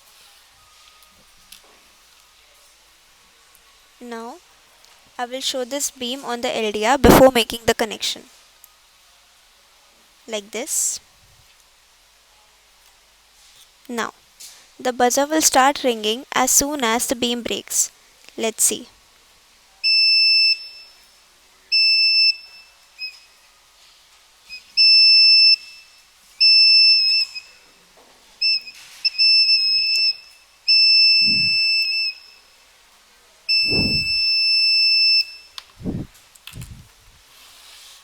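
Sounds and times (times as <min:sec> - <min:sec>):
high-pitched electronic alarm buzzer: 0:29.2 - 0:32.2, 0:33.5 - 0:35.5.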